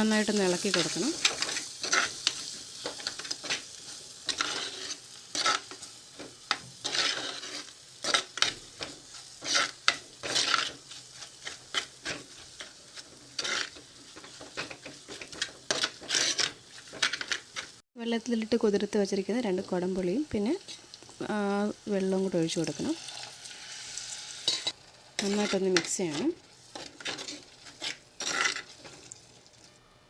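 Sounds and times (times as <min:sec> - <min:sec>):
faint frying sizzle: 0:00.0 - 0:30.0
spatula scraping a pan: 0:00.6 - 0:17.8, 0:23.0 - 0:29.2.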